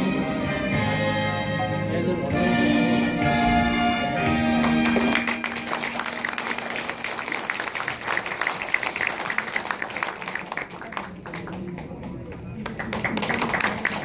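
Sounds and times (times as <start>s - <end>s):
music: 0.0s - 7.3s
audience applauding: 4.6s - 14.0s.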